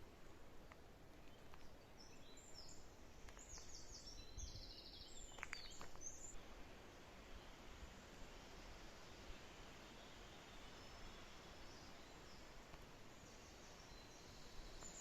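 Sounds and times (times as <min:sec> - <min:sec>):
songbird singing: 0:00.0 - 0:15.0.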